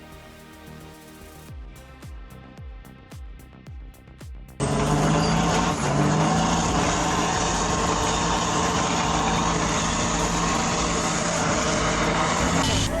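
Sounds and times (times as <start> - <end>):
electronic music beat: 0.0 - 13.0
loud vehicle engine running: 4.6 - 13.0.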